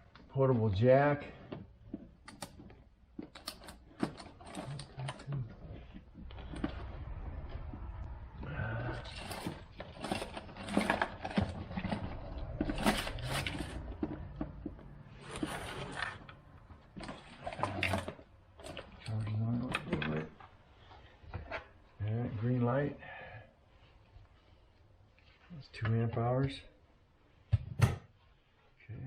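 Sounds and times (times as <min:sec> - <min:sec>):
low steady hum: 0:00.0 - 0:27.2
plastic tool case handling: 0:09.0 - 0:19.1.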